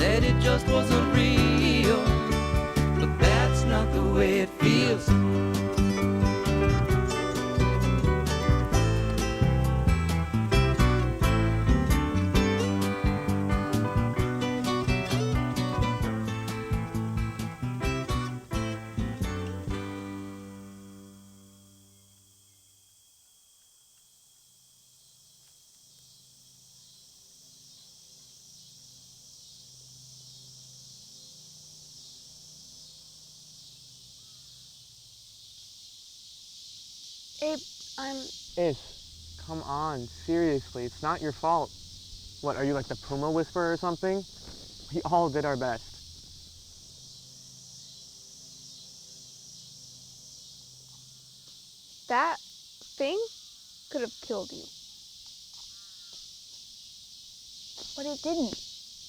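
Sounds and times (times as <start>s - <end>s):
night insects chorus: 0.0s - 59.0s
faint low hum: 38.2s - 48.6s.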